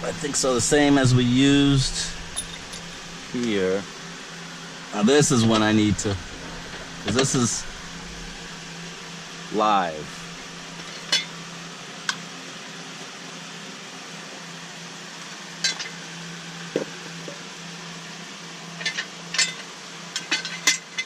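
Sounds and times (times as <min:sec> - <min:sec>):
faint steady hum: 0:00.0 - 0:21.0
metal tools clinking on bolts: 0:02.3 - 0:03.1.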